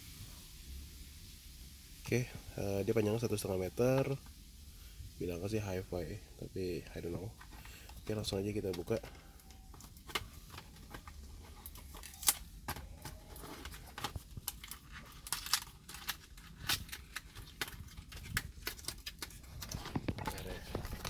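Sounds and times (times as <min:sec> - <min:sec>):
packaging clicks and crinkles: 0:06.8 - 0:21.0.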